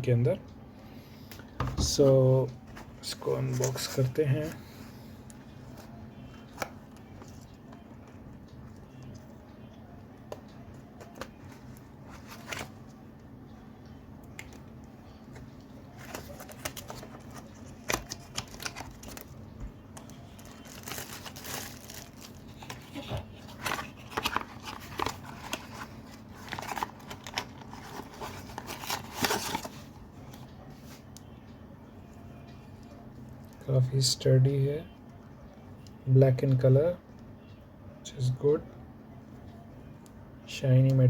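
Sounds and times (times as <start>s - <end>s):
wrapping crinkling and tearing: 20.0s - 29.7s.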